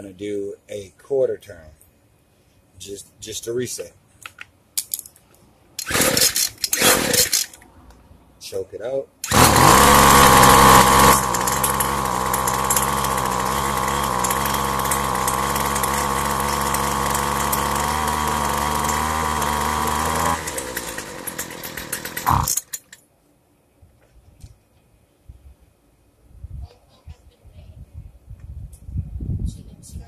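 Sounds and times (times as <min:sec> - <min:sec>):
string trimmer engine running: 0:05.8 - 0:07.5, 0:09.2 - 0:22.8.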